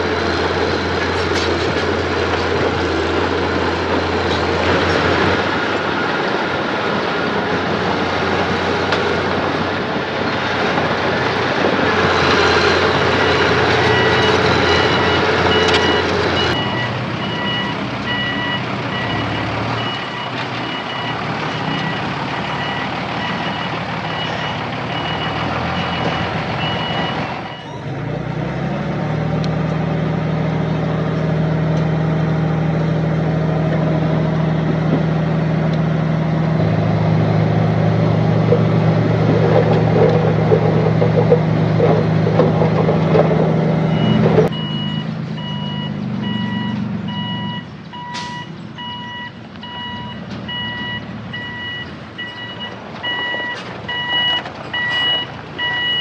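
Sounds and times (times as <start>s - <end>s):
truck engine running hard: 0.0s - 56.0s
truck reversing alarm beeps: 11.6s - 27.9s, 37.7s - 56.0s.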